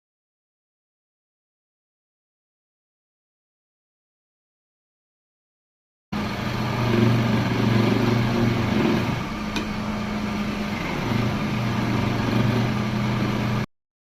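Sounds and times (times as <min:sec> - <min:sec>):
electric motor humming: 0:06.2 - 0:13.7.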